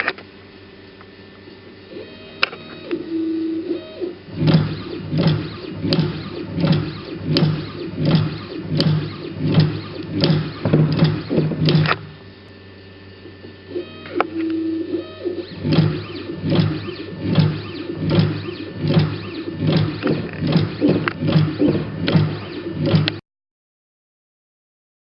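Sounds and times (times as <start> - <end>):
machine motor hum: 0.0 - 23.2
machine click: 3.8 - 12.3, 13.4 - 23.2.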